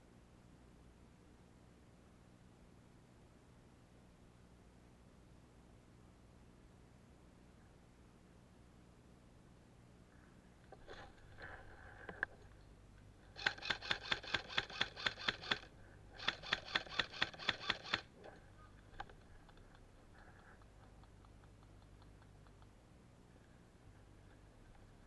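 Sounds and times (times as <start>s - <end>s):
airsoft gun rapid shots: 13.3s - 18.1s.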